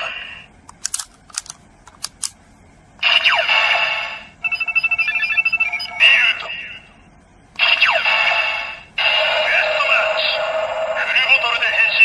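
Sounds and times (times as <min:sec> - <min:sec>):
plastic toy clicks: 0:00.7 - 0:02.3
rapid stuttering beeps: 0:04.5 - 0:06.1
electronic toy sound effects: 0:04.5 - 0:06.8.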